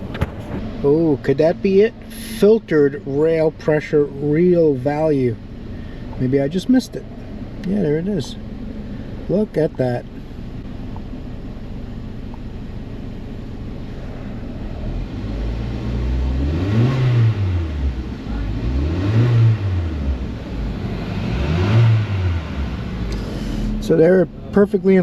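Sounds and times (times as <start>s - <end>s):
car engine idling: 0.0s - 25.0s
engine revving in throttle blips: 13.7s - 25.0s.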